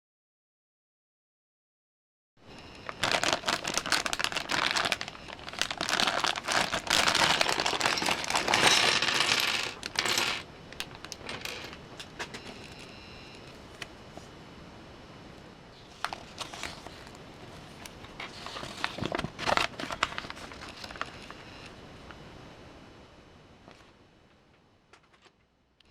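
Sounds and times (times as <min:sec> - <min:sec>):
plastic pieces clattering: 0:02.8 - 0:12.8
plastic bag crinkling: 0:02.8 - 0:12.9, 0:15.8 - 0:21.4.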